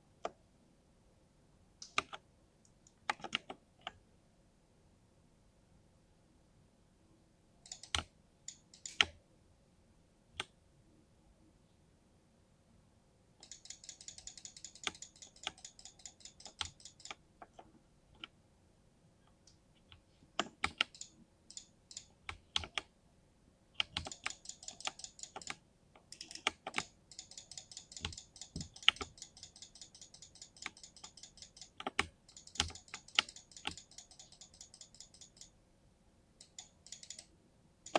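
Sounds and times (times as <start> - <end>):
mechanical keyboard typing: 7.7 - 9.2, 13.4 - 17.2, 20.4 - 22.9, 23.8 - 35.5, 36.4 - 37.3.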